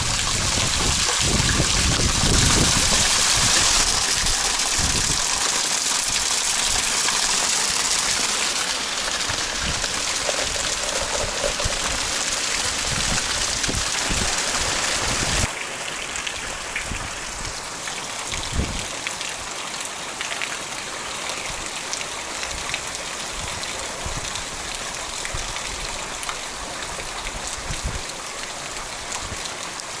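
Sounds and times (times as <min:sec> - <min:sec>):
raindrops thudding nearby: 0:00.0 - 0:19.6
heavy rain pouring: 0:00.0 - 0:30.0.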